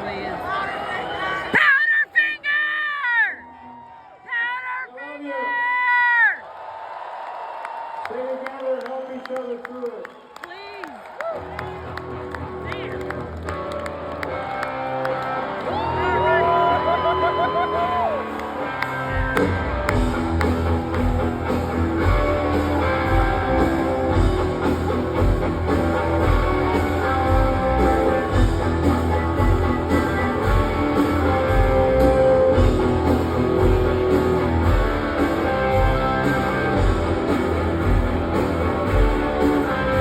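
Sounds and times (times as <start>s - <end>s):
rock band playing: 11.4s - 40.0s.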